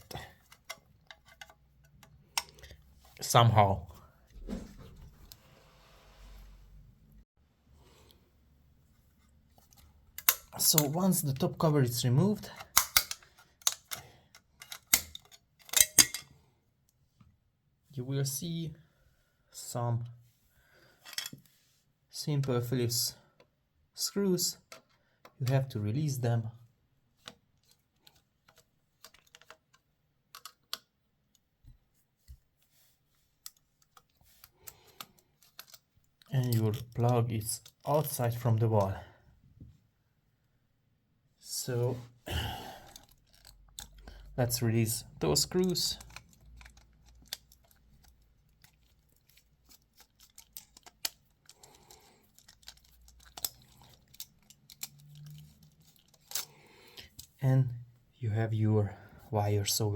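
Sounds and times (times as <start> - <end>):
plastic socket being handled: 0.0 - 2.8, 9.6 - 11.5, 12.4 - 16.3, 27.2 - 31.4, 33.4 - 38.1, 42.9 - 57.4
screwdriver clicking and scraping: 0.0 - 2.8, 9.6 - 11.4, 12.4 - 16.3, 21.0 - 21.5, 27.2 - 31.4, 33.4 - 37.9, 42.9 - 57.4
screwdriver clicks on screws: 12.6 - 14.0.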